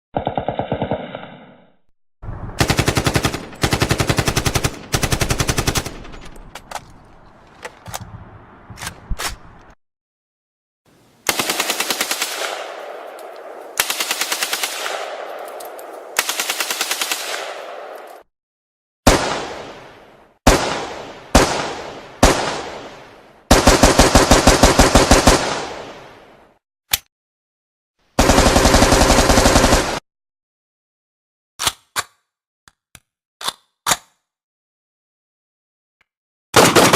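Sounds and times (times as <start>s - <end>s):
rifle single shots with echo: 11.3s - 18.2s, 19.1s - 26.0s.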